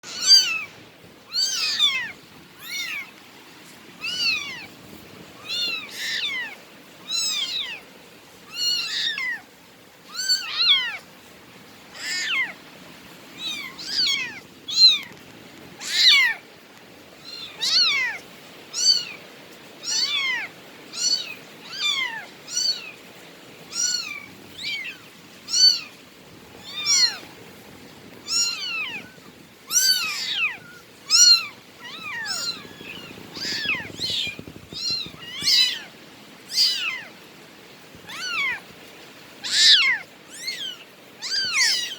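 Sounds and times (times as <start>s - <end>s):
cat meowing: 0.0s - 3.2s, 4.0s - 4.7s, 5.4s - 7.8s, 8.5s - 9.5s, 10.1s - 11.1s, 11.9s - 12.6s, 13.4s - 15.2s, 15.8s - 16.4s, 17.2s - 19.2s, 19.8s - 22.9s, 23.7s - 27.4s, 28.2s - 37.2s, 38.0s - 38.7s, 39.4s - 41.9s.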